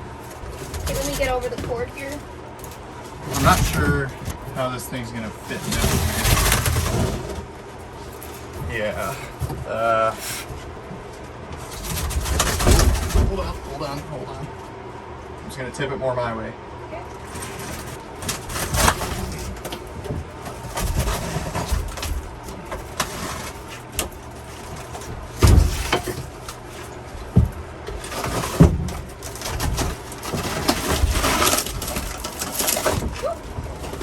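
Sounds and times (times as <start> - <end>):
wood scraping against metal: 0.0 - 14.6, 17.2 - 34.0
heavy wooden knocks and bumps: 11.7 - 13.9, 18.2 - 34.0.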